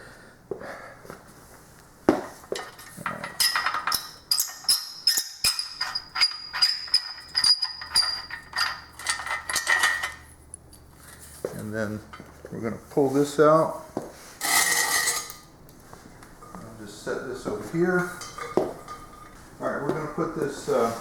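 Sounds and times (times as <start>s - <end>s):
metal clinking and knocking: 2.5s - 10.3s, 18.1s - 19.4s
high metal squeak: 4.3s - 9.0s.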